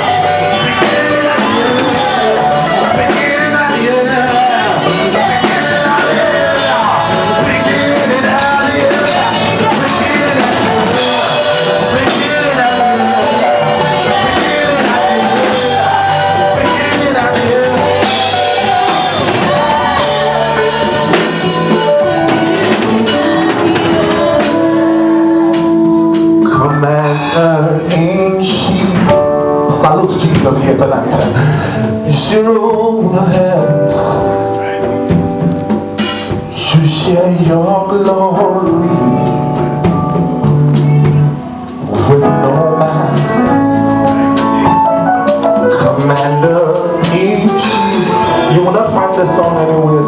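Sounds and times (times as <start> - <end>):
gospel band with drum kit: 0.0 - 50.0
voices singing: 0.0 - 50.0.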